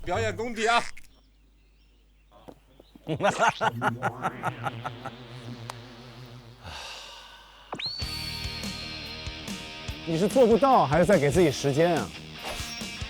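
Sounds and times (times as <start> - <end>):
man chuckling: 3.0 - 5.6.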